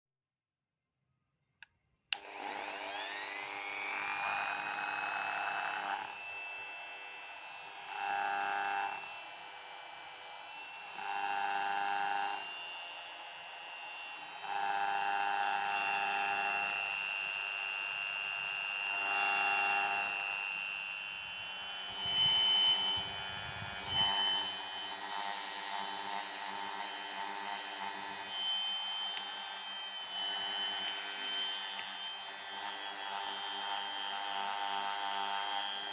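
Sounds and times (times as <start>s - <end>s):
mini grinder whining: 2.1s - 35.9s
intermittent buzzing tone: 14.2s - 35.9s.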